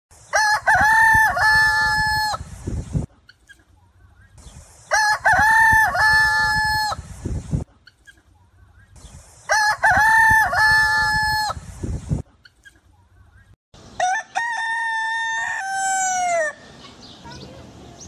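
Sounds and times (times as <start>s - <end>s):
rooster crowing: 0.3s - 2.4s, 4.9s - 7.0s, 9.5s - 11.6s, 14.0s - 16.7s.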